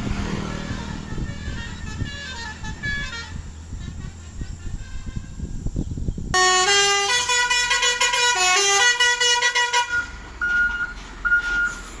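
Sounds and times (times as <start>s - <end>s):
engine rumble: 0.0s - 12.0s
multi-tone truck horn tune: 0.1s - 5.7s, 6.3s - 12.0s
short beeps: 9.9s - 11.9s.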